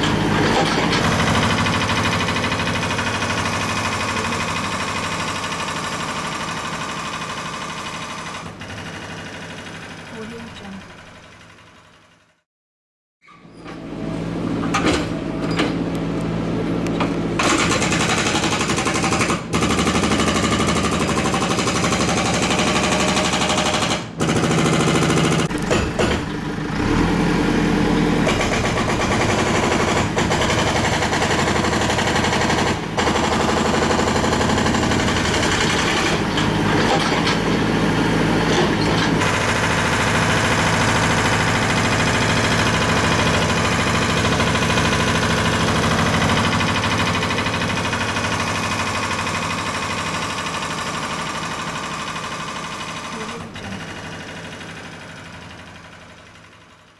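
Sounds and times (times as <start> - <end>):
power tool hammering: 17.0 - 27.2, 27.8 - 54.6.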